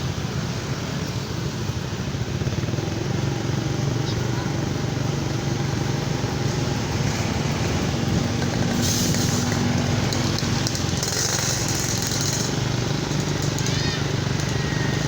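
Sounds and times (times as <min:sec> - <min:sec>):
vehicle engine running: 0:00.0 - 0:15.0
hiss: 0:08.6 - 0:15.0.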